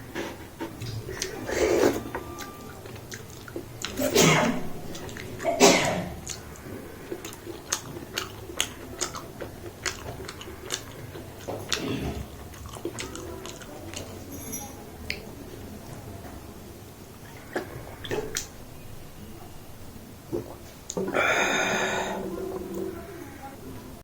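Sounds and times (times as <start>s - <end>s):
person chewing food: 0.0s - 14.4s, 17.1s - 18.5s
mouth clicks and smacks: 0.6s - 14.2s, 17.2s - 18.6s, 20.3s - 21.8s.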